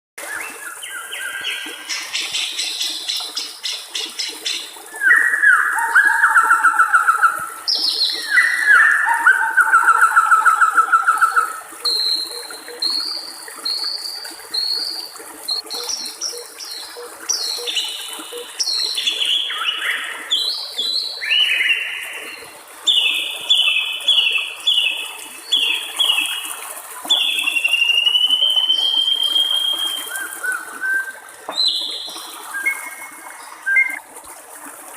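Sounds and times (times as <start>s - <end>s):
water trickling: 0.2s - 34.9s
songbird singing varied song: 0.8s - 13.1s.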